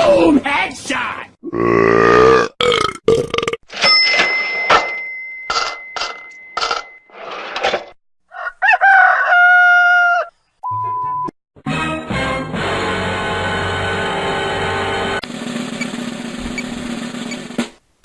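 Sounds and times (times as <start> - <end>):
belch-like sound: 1.4 - 3.6.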